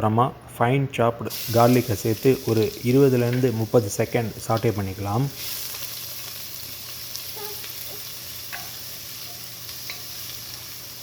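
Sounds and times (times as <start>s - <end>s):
garlic sizzling in oil: 1.3s - 11.0s.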